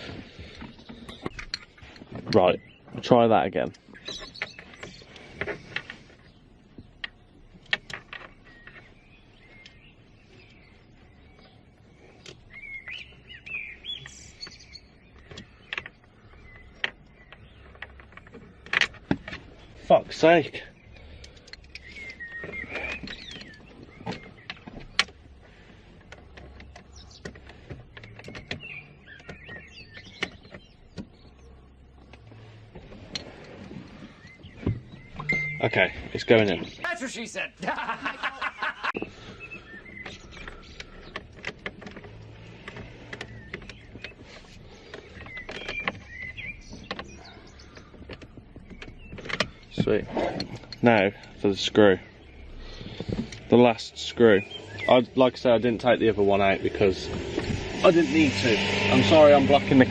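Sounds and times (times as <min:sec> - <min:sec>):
plastic parts clicking and knocking: 0:00.0 - 0:09.8, 0:11.4 - 0:36.9, 0:38.8 - 0:57.7
high squeaky chirps: 0:34.0 - 0:41.2.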